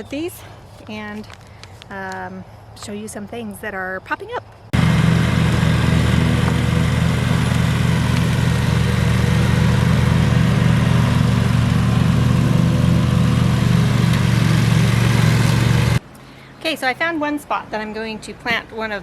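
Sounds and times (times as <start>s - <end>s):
lawn mower engine running: 4.8s - 16.0s.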